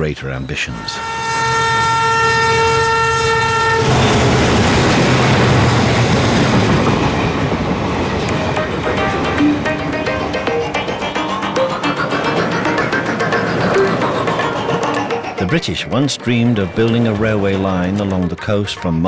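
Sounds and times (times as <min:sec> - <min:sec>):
loud train running noise: 0:00.5 - 0:18.6
train horn: 0:00.6 - 0:11.4.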